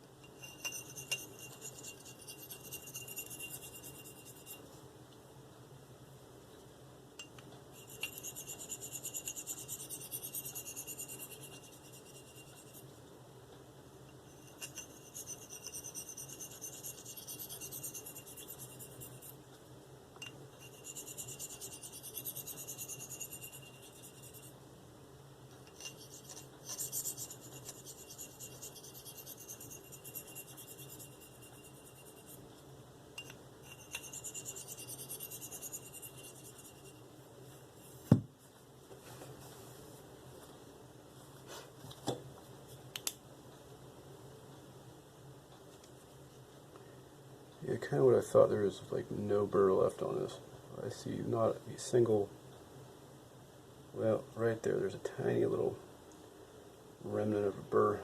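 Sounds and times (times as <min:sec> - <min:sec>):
knife scraping on sharpening stone: 0:00.2 - 0:04.6, 0:07.8 - 0:12.8, 0:14.3 - 0:19.4, 0:20.2 - 0:24.5, 0:25.7 - 0:32.4, 0:33.2 - 0:37.0.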